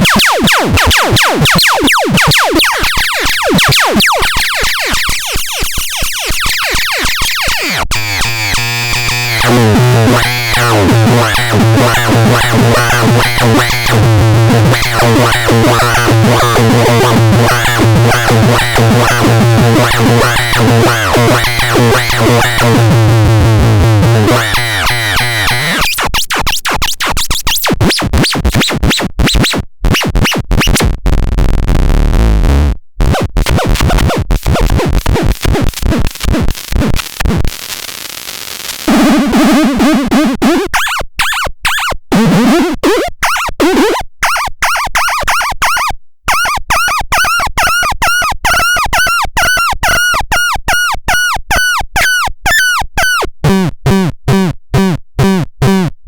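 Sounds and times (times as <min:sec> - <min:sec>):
glitchy synth noise: 0:00.0 - 0:26.0, 0:33.1 - 0:40.2.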